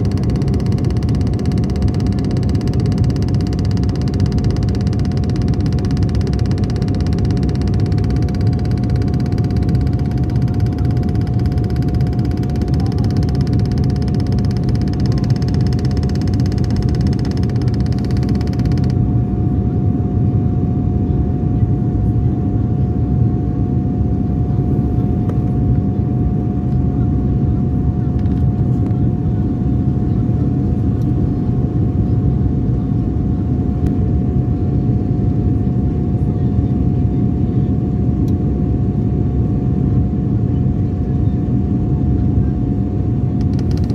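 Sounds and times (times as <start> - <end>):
steady whine: 0.0 - 19.9, 43.1 - 43.9
airliner cabin roar: 0.0 - 21.5.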